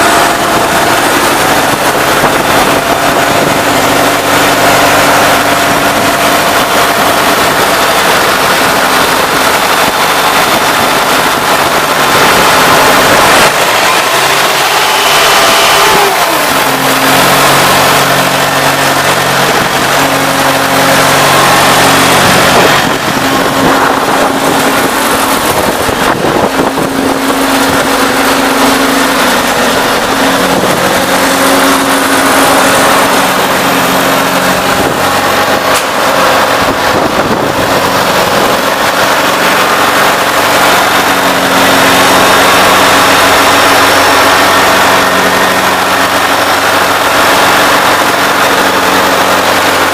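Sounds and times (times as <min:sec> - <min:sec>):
air compressor running: 0:00.0 - 0:49.9.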